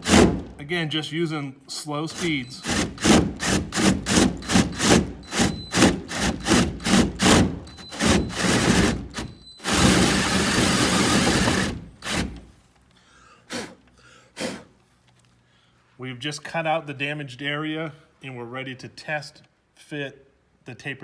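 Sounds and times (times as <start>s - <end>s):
drill cutting drywall: 0.0s - 0.5s, 2.1s - 12.5s.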